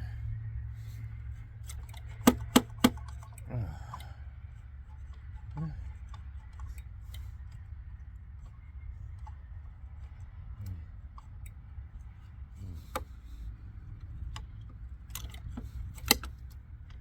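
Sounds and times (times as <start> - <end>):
steady low hum: 0.0 - 17.0
light metallic clicks and taps: 1.6 - 13.2, 13.9 - 17.0.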